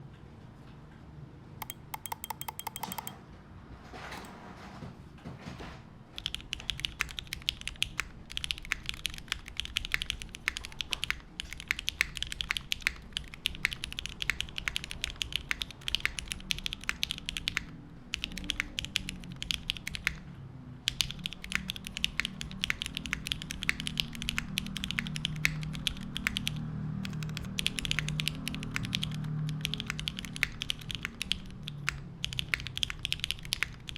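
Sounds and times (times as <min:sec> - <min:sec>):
fast even ticks: 0:01.6 - 0:03.2, 0:06.2 - 0:20.2, 0:20.9 - 0:33.9
mechanical keyboard typing: 0:01.6 - 0:03.2, 0:06.2 - 0:20.3, 0:20.9 - 0:33.9.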